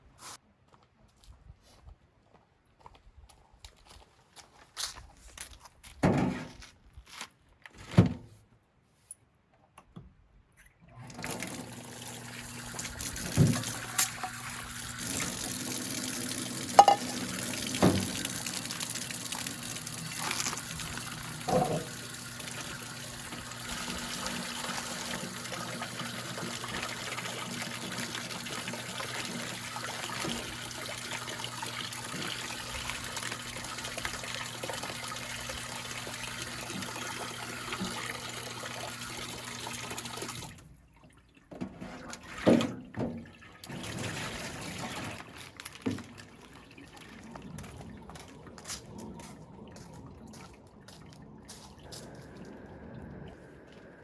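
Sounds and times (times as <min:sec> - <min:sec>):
water running: 0:11.0 - 0:40.6.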